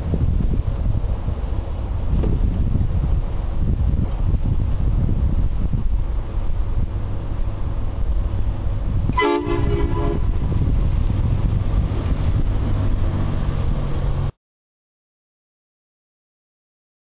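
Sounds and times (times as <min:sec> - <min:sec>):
steady low rumble: 0:00.0 - 0:14.3
air train horn blast: 0:09.1 - 0:10.6.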